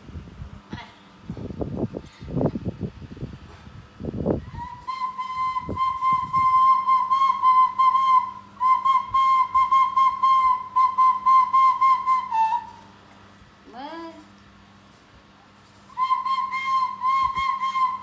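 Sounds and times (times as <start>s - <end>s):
loud high wavering whistle: 4.3s - 12.9s, 15.9s - 18.0s.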